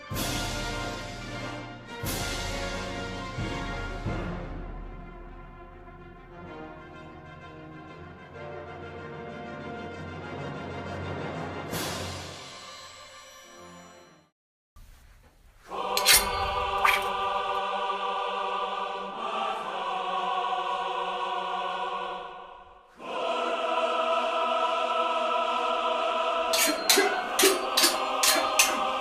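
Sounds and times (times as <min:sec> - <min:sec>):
choir-like held chord: 0:15.7 - 0:29.0.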